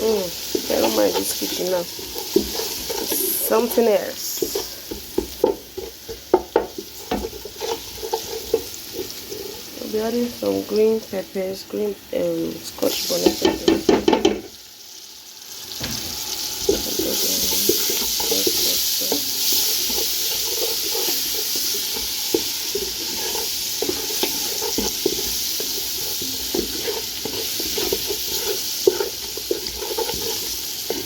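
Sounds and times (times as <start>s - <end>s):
food sizzling in oil: 0.0s - 31.0s
spoon scraping a pot: 0.4s - 9.8s, 16.6s - 31.0s.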